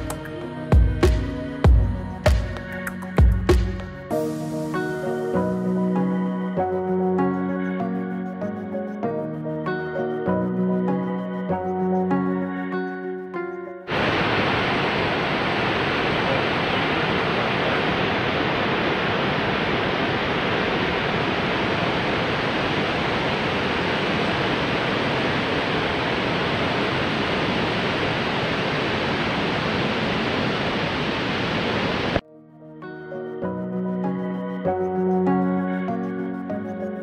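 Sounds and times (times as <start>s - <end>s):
waterfall rushing: 13.9s - 32.2s.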